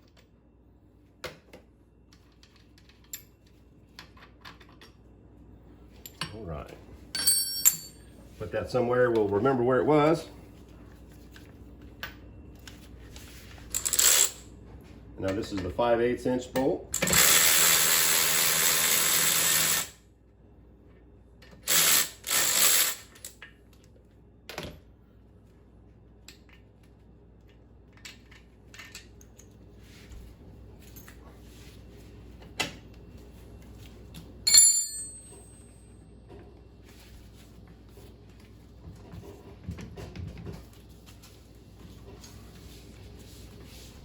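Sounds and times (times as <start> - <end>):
ringing metal clink: 7.2 - 8.1, 34.5 - 35.7.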